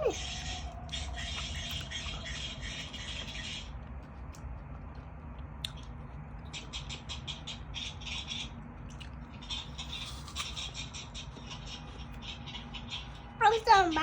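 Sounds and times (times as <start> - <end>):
apple crunching chewing: 0.1 - 6.8, 8.7 - 12.3.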